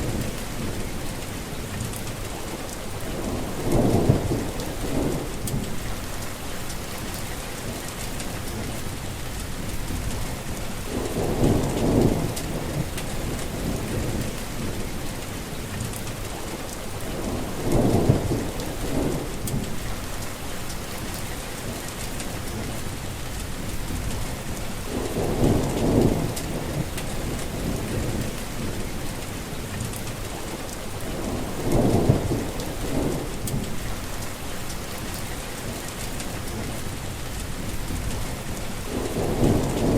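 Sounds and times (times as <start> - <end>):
heavy rain falling: 0.0 - 39.9
low rumbles of thunder: 0.0 - 39.9.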